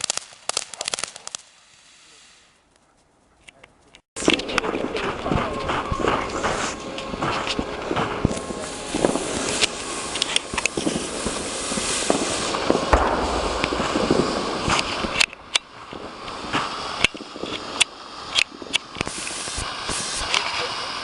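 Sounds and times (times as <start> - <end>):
fireworks crackling: 0.0 - 2.7, 4.2 - 21.0
loud firework pops: 4.2 - 20.6.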